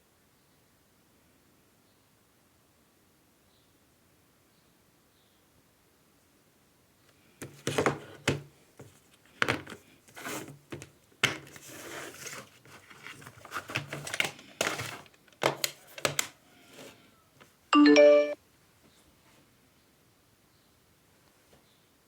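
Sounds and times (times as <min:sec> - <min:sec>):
packaging crinkling and tearing: 0:11.4 - 0:16.3.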